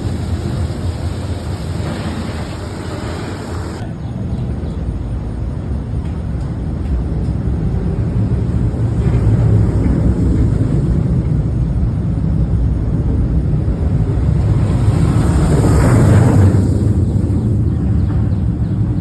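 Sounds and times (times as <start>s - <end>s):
rushing hiss: 0.0s - 3.8s
roller coaster rumble: 0.0s - 19.0s.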